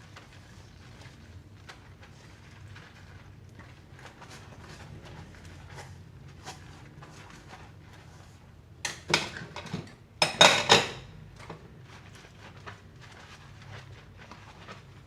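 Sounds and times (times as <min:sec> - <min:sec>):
dishes clattering: 0:08.9 - 0:11.1
dishes and cutlery clinking: 0:08.9 - 0:11.6.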